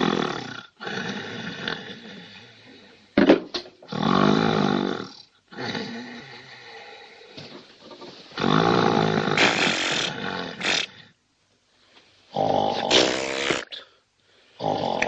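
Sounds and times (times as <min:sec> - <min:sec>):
man snoring loudly: 0:03.9 - 0:06.2.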